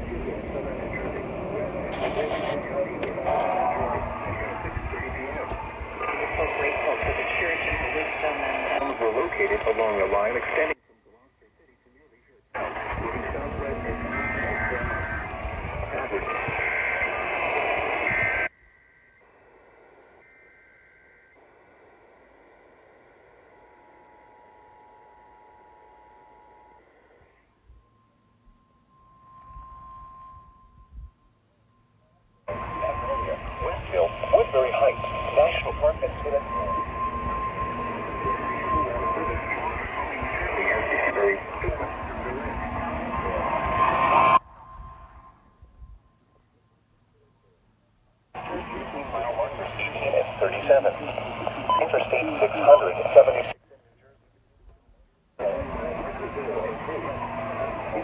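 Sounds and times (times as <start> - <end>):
radio audio: 0.0 - 18.5, 32.5 - 45.2, 48.4 - 54.3, 55.4 - 58.0
receiver hiss: 0.0 - 30.6, 32.5 - 45.4, 48.4 - 53.6, 55.4 - 58.0
faint steady high tones: 0.0 - 54.3, 55.4 - 58.0
faint low hum: 0.0 - 58.0.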